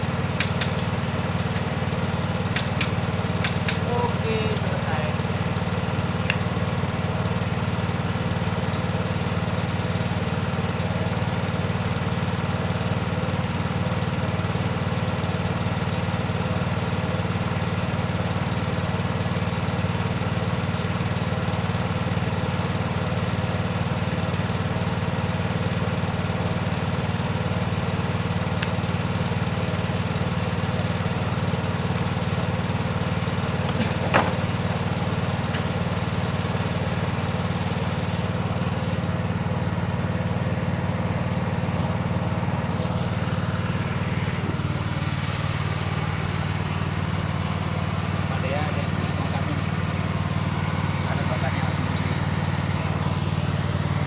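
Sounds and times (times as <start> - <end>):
diesel engine idling: 0.0 - 54.0.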